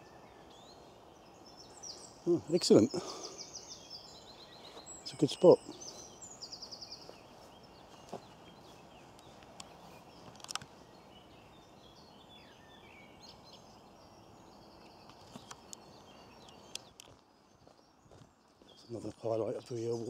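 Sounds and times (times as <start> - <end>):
faint birdsong: 0.0 - 20.0
outdoor background noise: 0.0 - 20.0
soft clicks: 9.1 - 10.7.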